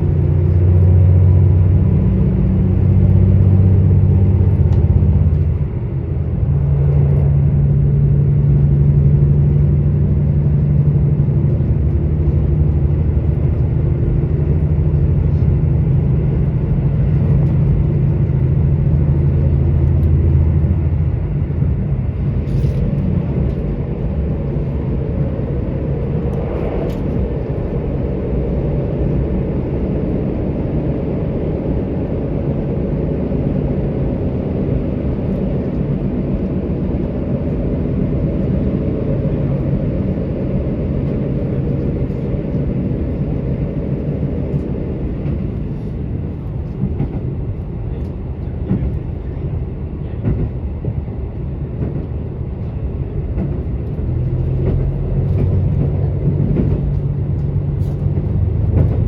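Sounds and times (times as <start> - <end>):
diesel engine drone: 0.0 - 59.0
train wheels rumbling on track: 0.0 - 59.0.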